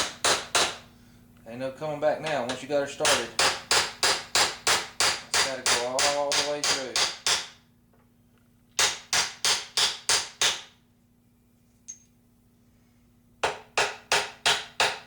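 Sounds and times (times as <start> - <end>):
hammer striking a metal punch: 0.0 - 0.8, 2.5 - 7.6, 8.8 - 10.7, 13.4 - 15.0.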